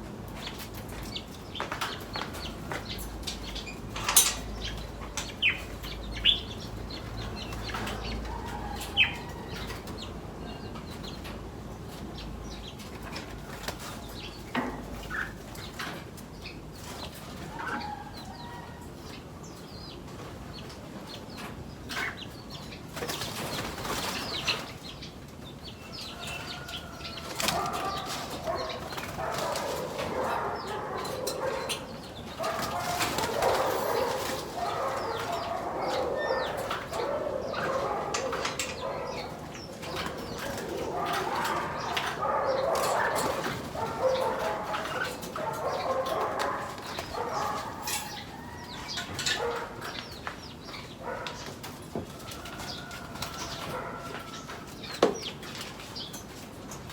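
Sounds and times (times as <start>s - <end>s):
birds flapping wings: 32.4s - 34.6s.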